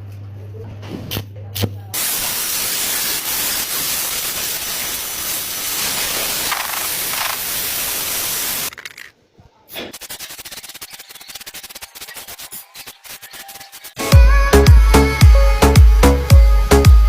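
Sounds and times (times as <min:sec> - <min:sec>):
loud spraying hiss: 0:02.0 - 0:08.7.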